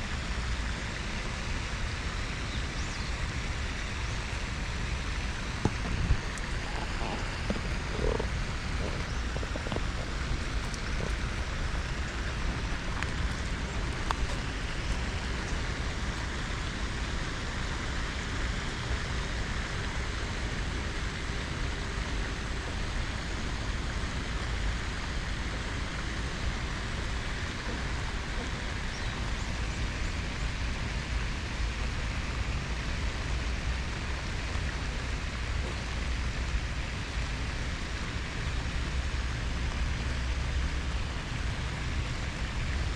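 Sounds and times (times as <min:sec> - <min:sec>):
steady rain falling: 0:00.0 - 0:42.9.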